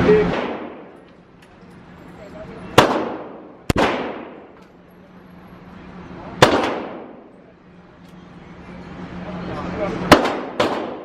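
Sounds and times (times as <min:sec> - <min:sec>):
gunshots with ringing echo: 0:02.8 - 0:04.5, 0:06.4 - 0:07.2, 0:10.1 - 0:11.0.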